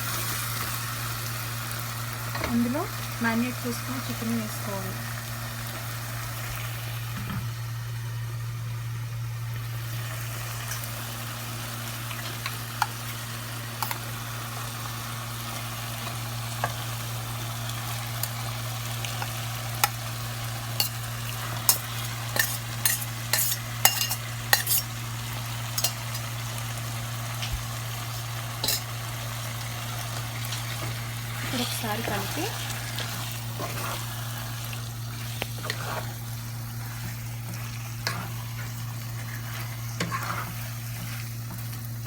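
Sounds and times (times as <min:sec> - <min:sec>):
chicken sizzling in a pan: 0:00.0 - 0:42.0
spoon scraping and clinking pan: 0:22.4 - 0:24.9, 0:25.8 - 0:26.2, 0:28.6 - 0:28.9.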